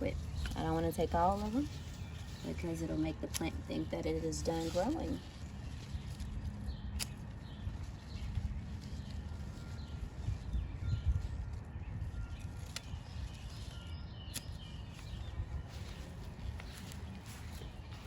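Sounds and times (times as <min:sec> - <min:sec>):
faint birdsong: 0:00.0 - 0:18.0
low steady rumble: 0:00.0 - 0:18.0
scissors snipping: 0:03.2 - 0:05.1, 0:06.8 - 0:07.3, 0:14.3 - 0:15.1.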